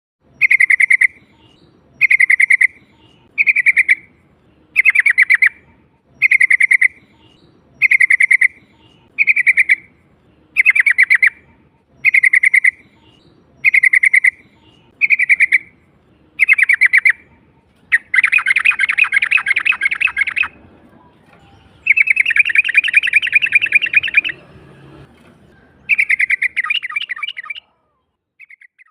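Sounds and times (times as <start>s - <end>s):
bulbul song: 0.2s - 24.5s, 25.8s - 28.9s.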